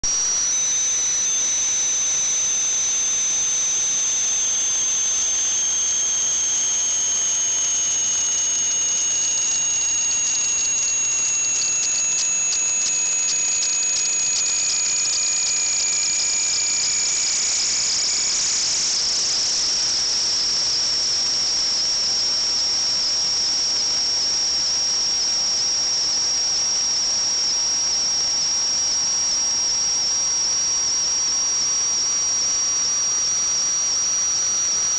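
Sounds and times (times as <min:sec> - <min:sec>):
pipe leak hissing and whistling: 0:00.1 - 0:23.9.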